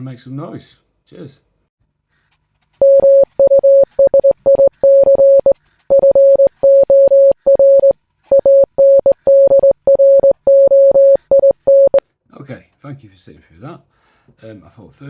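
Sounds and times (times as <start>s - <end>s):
electronic morse code beeps: 2.8s - 12.0s.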